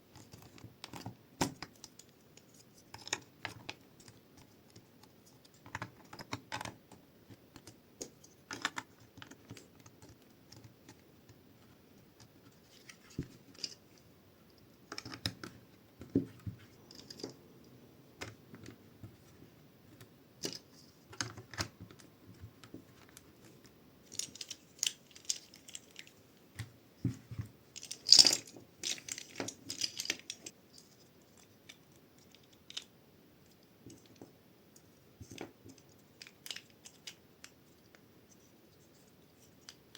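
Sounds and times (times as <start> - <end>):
plastic bricks clicking together: 27.8 - 30.6.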